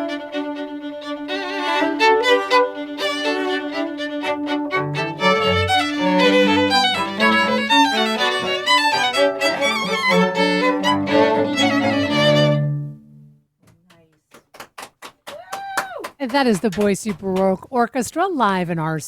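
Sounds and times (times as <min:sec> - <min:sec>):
string orchestra playing: 0:00.0 - 0:13.3.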